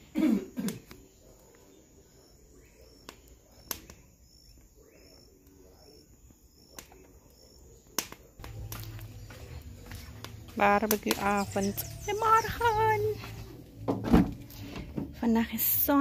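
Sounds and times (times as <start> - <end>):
cricket chirping faintly: 0.0 - 10.6.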